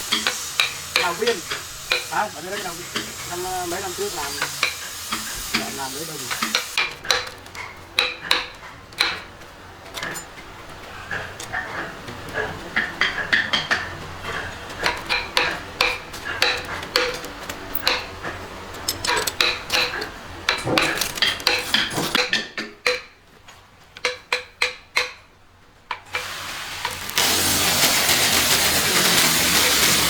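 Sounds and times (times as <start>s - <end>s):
metallic clinks and taps: 14.8s - 18.1s, 18.7s - 23.0s.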